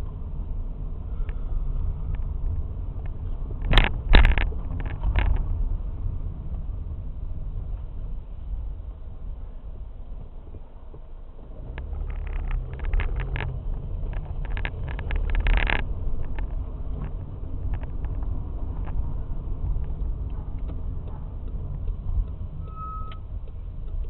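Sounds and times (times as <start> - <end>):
low rumble of car: 0.0 - 24.0
car brakes squealing: 22.6 - 23.3.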